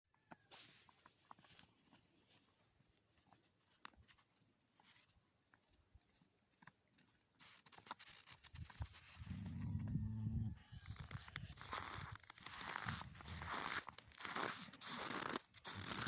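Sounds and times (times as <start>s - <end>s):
snow creaking crackles: 7.4s - 16.0s
hissy crunching: 11.1s - 16.0s.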